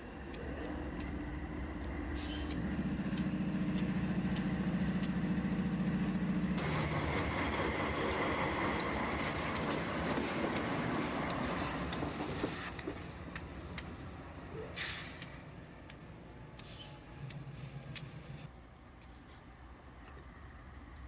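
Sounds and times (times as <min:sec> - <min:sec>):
loud broad rumble and hiss: 0:00.0 - 0:18.5
diesel locomotive droning: 0:00.0 - 0:21.0.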